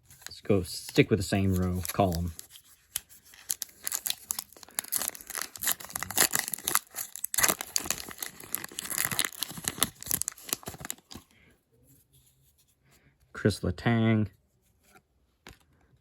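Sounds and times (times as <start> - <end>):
foil wrapper crinkling and tearing: 0.1 - 11.3.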